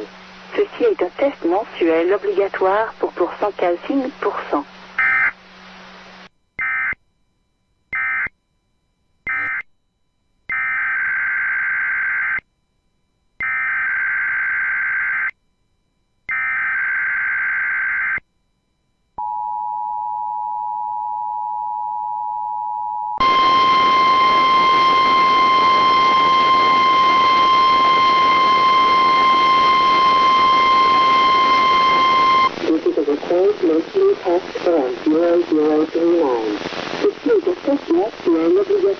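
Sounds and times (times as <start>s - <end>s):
radio hiss: 0.0s - 6.3s, 23.2s - 38.9s
steady warning alarm tone: 6.6s - 7.0s, 7.9s - 8.3s, 9.3s - 9.7s, 10.4s - 12.4s, 13.3s - 15.3s, 15.9s - 22.5s, 23.1s - 32.6s
two-tone attention signal: 9.3s - 9.6s, 19.2s - 32.5s.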